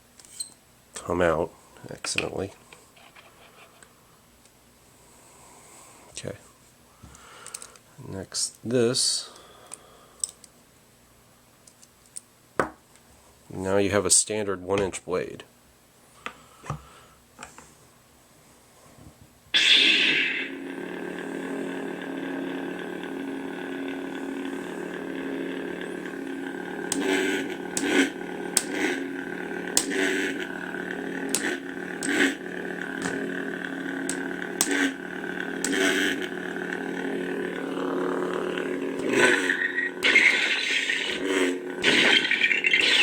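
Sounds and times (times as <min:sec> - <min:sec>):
sharp lightsaber clash hits: 0:19.6 - 0:20.4
lightsaber hum through small speaker: 0:19.6 - 0:43.0
lightsaber igniting: 0:19.6 - 0:43.0.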